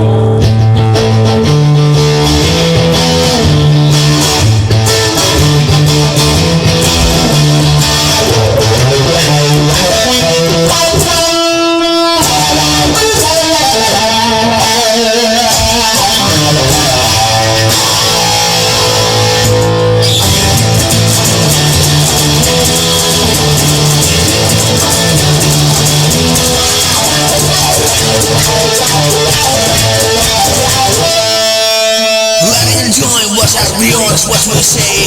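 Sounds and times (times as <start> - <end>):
blues-rock electric guitar music: 0.0 - 35.0.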